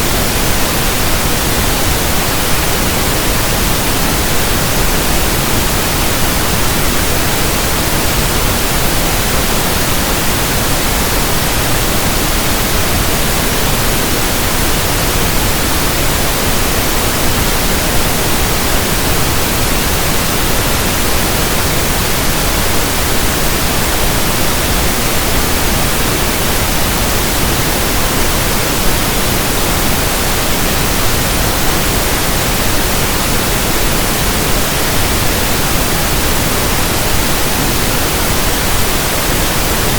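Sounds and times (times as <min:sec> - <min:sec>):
pink noise hiss: 0:00.0 - 0:39.9.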